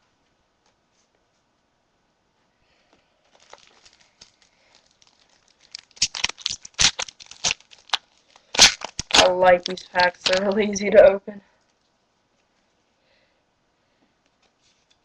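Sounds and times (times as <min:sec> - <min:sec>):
wrapper crinkling and tearing: 0:03.2 - 0:10.8.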